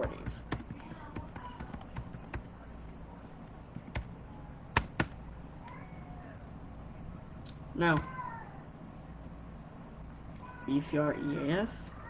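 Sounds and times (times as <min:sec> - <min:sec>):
keyboard typing: 0:00.0 - 0:02.5, 0:03.7 - 0:04.1, 0:04.8 - 0:05.2.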